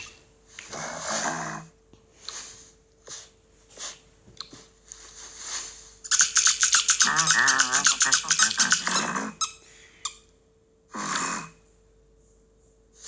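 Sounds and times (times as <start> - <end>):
short breathy puffs: 2.1 - 6.0
cartoon chicken squawks: 6.1 - 9.6
cartoon low grunt: 10.9 - 11.6.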